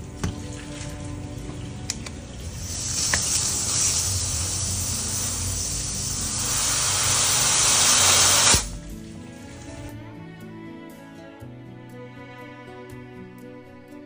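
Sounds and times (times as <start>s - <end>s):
soft background music: 0.0s - 14.0s
pressurised spray hissing: 2.5s - 9.9s.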